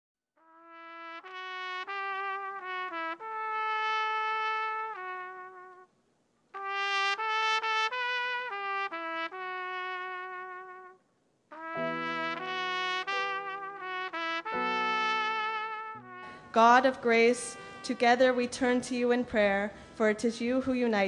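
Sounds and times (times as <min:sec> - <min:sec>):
wind instrument solo melody: 0:11.6 - 0:16.5.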